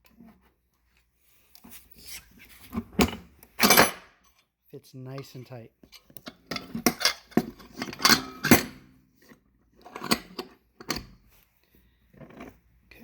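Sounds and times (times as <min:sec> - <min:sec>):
metal parts clinking and clanking: 0:05.8 - 0:08.9, 0:09.8 - 0:11.1.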